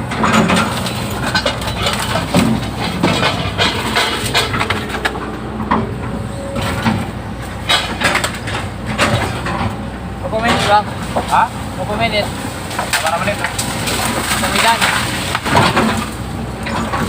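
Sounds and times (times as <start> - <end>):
excavator diesel engine running: 0.0 - 17.0
sharp cracks and knocks: 12.7 - 17.0.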